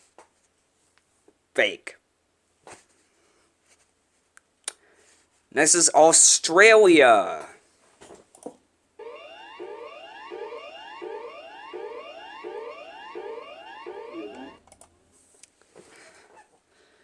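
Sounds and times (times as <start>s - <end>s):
electronic rising sweeps: 9.0s - 14.6s.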